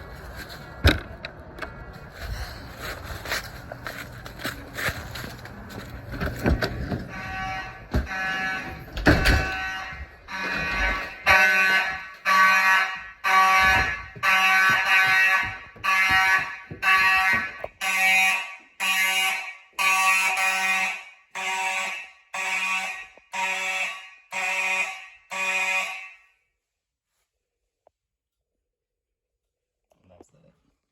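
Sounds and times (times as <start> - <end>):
fire alarm horns pulsing: 3.3 - 26.4.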